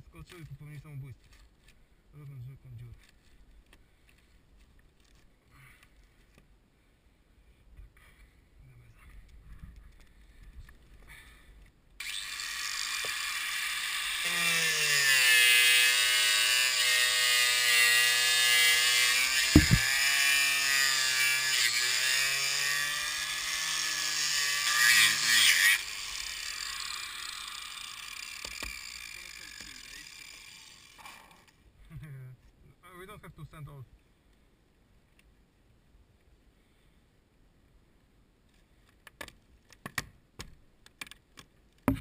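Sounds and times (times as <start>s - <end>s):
angle grinder cutting fiberglass: 12.0s - 31.5s
sharp knock: 19.5s - 19.9s.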